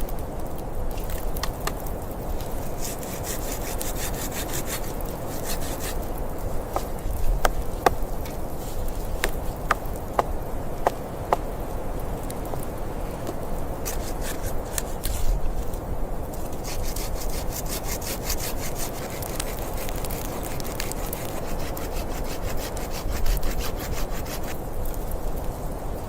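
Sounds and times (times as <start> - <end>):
hand saw cutting wood: 2.6 - 11.0, 13.8 - 15.4, 16.4 - 24.6.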